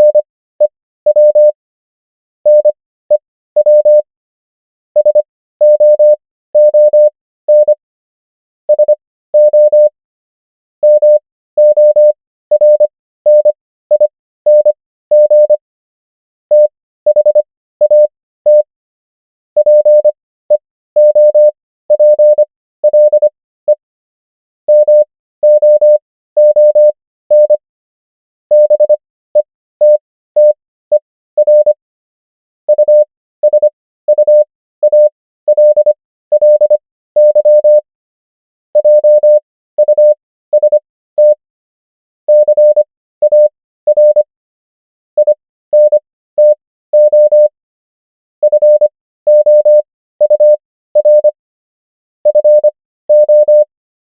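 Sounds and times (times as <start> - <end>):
morse code beeps: 0.0 - 1.6, 2.5 - 4.1, 5.0 - 7.8, 8.7 - 9.9, 10.8 - 15.6, 16.5 - 18.7, 19.6 - 20.1, 21.0 - 23.8, 24.7 - 27.6, 28.5 - 31.8, 32.7 - 37.8, 38.8 - 41.4, 42.3 - 44.3, 45.2 - 47.5, 48.4 - 51.4, 52.2 - 53.7.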